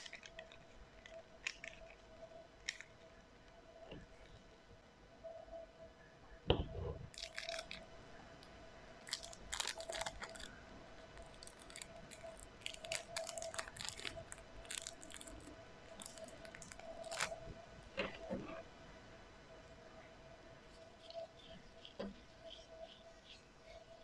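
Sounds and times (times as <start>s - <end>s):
slime crackling when squeezed: 0.0s - 2.0s, 7.1s - 7.8s, 9.0s - 17.4s.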